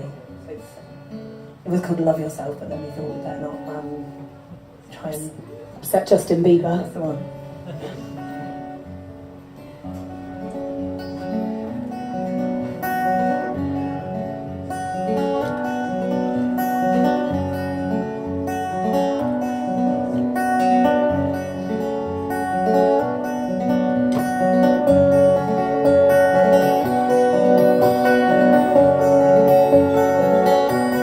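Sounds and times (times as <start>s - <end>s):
acoustic guitar strumming: 0.0s - 4.8s, 6.0s - 31.0s.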